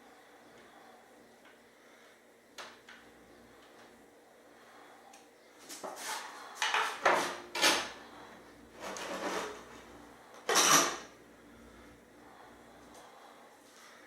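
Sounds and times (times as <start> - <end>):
parts scraping and knocking: 8.8 - 9.9.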